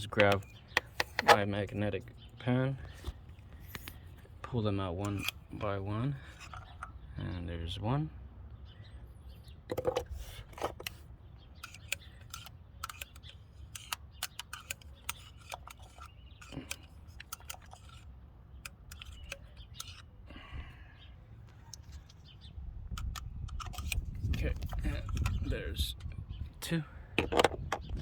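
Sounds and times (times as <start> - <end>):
small metallic clicks and taps: 0.0 - 1.8, 11.6 - 20.1, 22.9 - 26.2.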